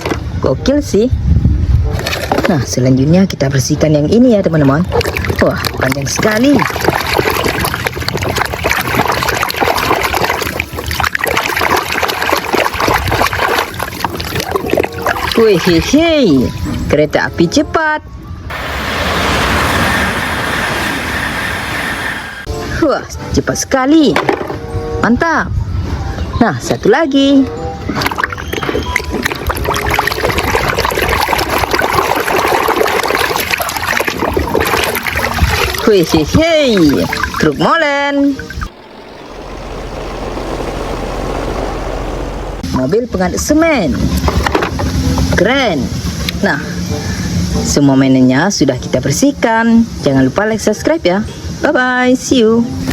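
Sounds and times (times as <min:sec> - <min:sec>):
running water splashing: 0:04.9 - 0:16.7, 0:28.1 - 0:42.8.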